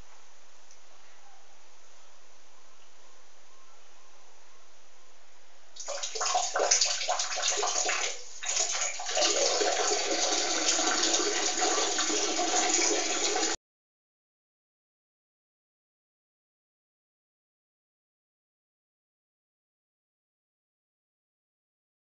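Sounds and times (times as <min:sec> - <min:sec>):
person urinating into water: 0:05.8 - 0:13.6.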